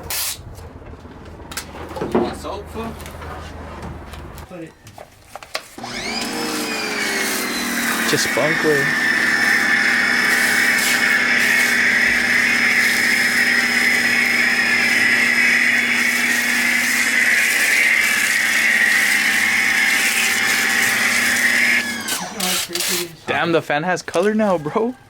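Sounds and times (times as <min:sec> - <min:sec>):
pressure washer motor hum: 0:05.8 - 0:23.1
spray jet hissing: 0:10.2 - 0:13.2.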